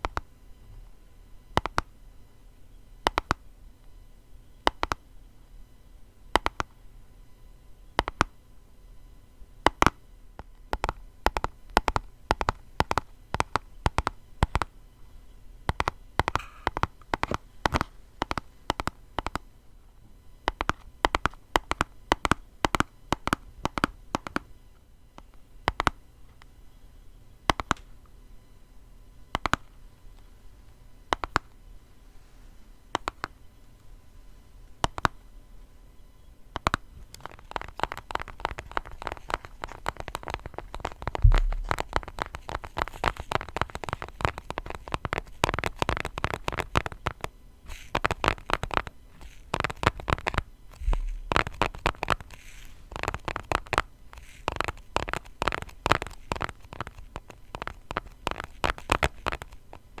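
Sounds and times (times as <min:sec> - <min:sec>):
fingers tapping on cardboard box: 0:01.6 - 0:01.9, 0:03.0 - 0:03.4, 0:04.6 - 0:05.0, 0:06.3 - 0:06.7, 0:08.0 - 0:08.3, 0:09.6 - 0:14.7, 0:15.7 - 0:19.5, 0:20.4 - 0:24.5, 0:25.2 - 0:26.0, 0:27.5 - 0:27.8, 0:29.3 - 0:29.7, 0:31.1 - 0:31.5, 0:32.9 - 0:33.4, 0:34.8 - 0:35.2, 0:36.5 - 1:00.0
dull low thumps: 0:41.0 - 0:42.1, 0:50.8 - 0:51.6.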